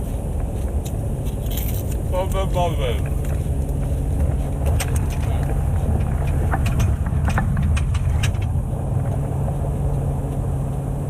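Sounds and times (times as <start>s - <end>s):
car cabin rumble: 0.0s - 11.0s
sharp crackling clicks: 3.0s - 10.1s.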